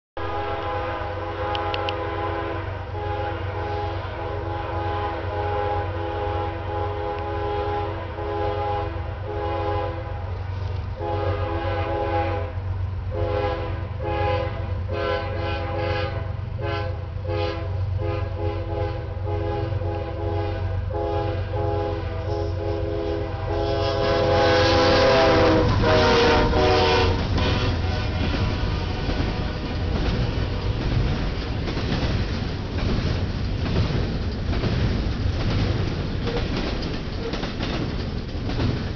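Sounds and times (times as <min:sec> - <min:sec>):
locomotive air horn blasts: 0:00.2 - 0:31.0
diesel locomotive rumble: 0:00.2 - 0:38.9.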